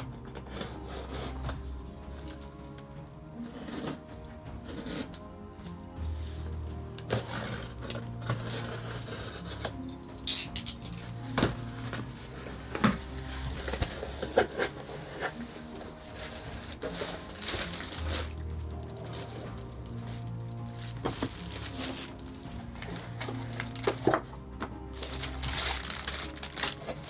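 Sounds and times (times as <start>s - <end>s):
soft background music: 0.0s - 27.0s
small objects clinking and knocking: 10.2s - 12.1s, 16.2s - 27.0s.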